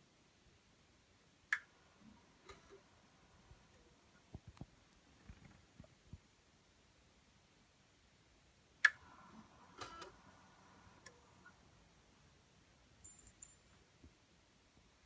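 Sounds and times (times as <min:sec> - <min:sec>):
faint ringing: 0:09.1 - 0:14.4.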